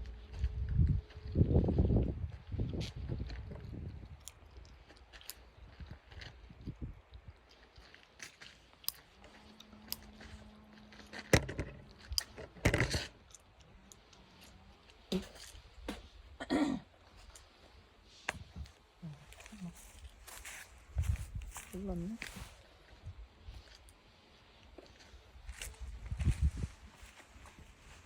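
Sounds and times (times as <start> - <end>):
wood knocking and scraping: 11.3 - 13.1.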